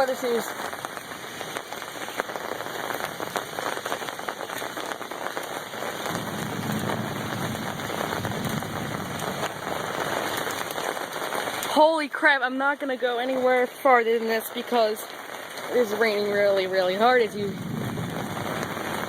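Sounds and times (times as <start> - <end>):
torrential rain pouring: 0.0 - 19.0
low thunder rumble: 6.0 - 11.0, 16.4 - 19.0.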